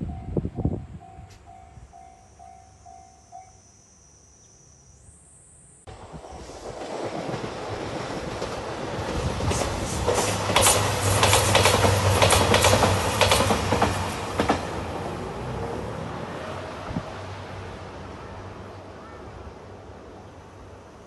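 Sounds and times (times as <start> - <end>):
diesel train passing: 5.9 - 21.0
wheels clacking over rail joints: 6.2 - 15.2.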